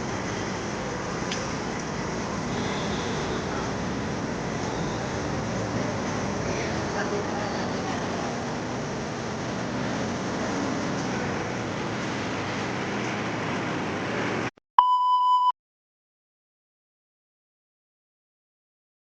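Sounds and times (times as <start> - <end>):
short electronic beep: 14.8 - 15.5.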